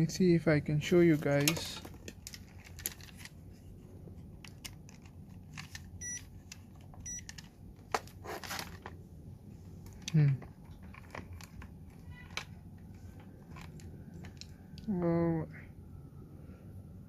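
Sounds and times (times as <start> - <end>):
small clicks and handling noises: 1.1 - 9.0, 9.6 - 14.9.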